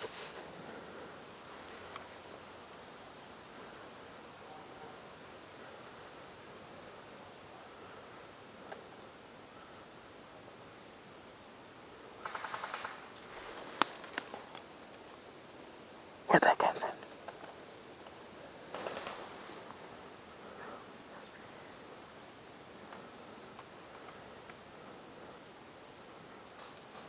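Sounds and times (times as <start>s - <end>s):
insects chirring: 0.0s - 27.0s
sharp snaps: 13.8s - 14.7s.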